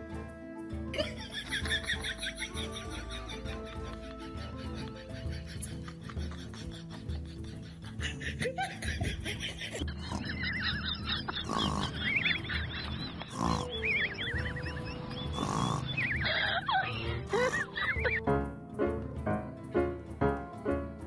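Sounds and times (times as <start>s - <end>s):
background music with beat: 0.0s - 21.0s
high warbling chirps: 12.0s - 18.2s.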